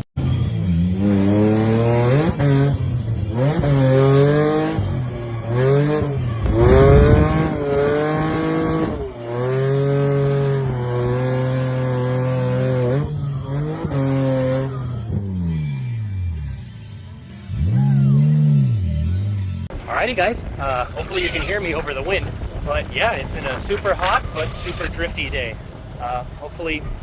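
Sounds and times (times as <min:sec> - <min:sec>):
car engine revving: 0:00.2 - 0:20.2
tire squeal: 0:03.4 - 0:15.5, 0:20.8 - 0:22.1, 0:23.4 - 0:25.4.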